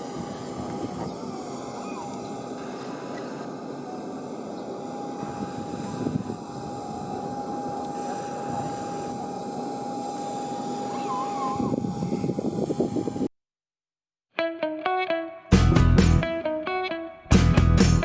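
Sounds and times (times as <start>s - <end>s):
airliner cabin engine rush: 0.0s - 13.3s
constant hum: 0.0s - 13.3s.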